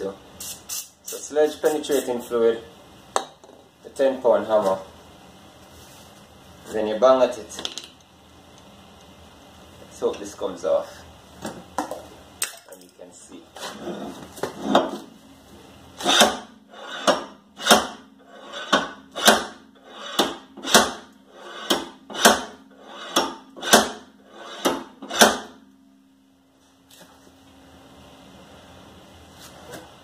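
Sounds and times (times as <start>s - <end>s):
sledgehammer striking metal hub: 18.6s - 25.6s.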